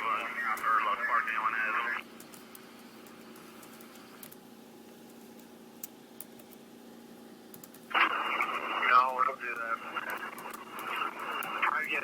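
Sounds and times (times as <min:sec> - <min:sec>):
faint electrical hum: 0:00.0 - 0:12.0
faint clicks: 0:07.5 - 0:08.2, 0:09.0 - 0:12.0.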